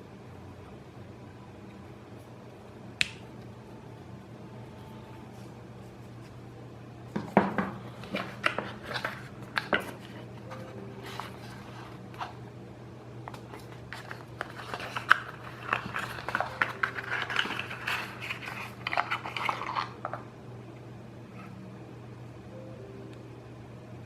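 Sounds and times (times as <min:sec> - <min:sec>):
steady low hum: 0:00.0 - 0:24.0
packaging clicks taps and rustles: 0:08.0 - 0:10.2, 0:13.3 - 0:20.2.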